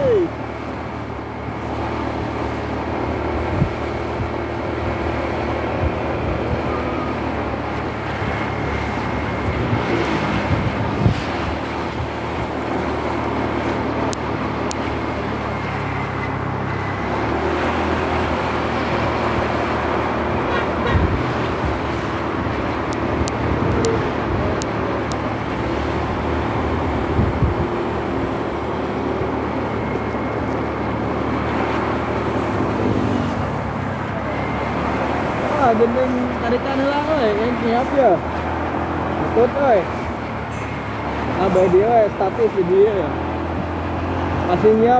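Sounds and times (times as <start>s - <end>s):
road traffic passing: 0.0s - 44.9s.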